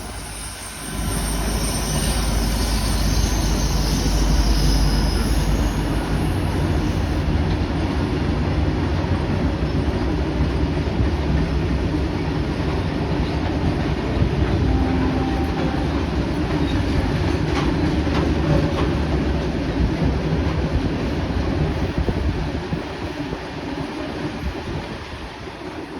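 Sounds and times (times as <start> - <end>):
high-pitched wheel squeal: 0.0 - 7.2
train wheels rumbling on rail: 0.0 - 25.9.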